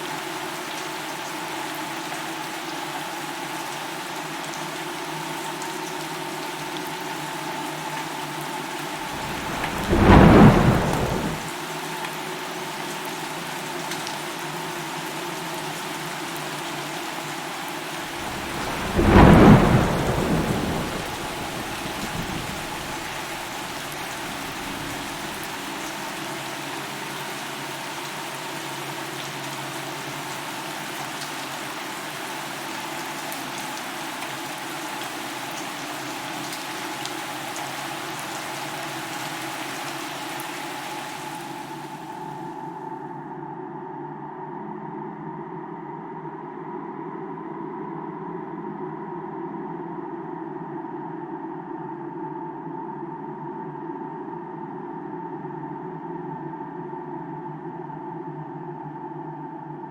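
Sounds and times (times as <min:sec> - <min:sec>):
steady rain falling: 0:00.0 - 0:42.9
thunderclap rumbling: 0:09.0 - 0:11.5, 0:18.0 - 0:25.7.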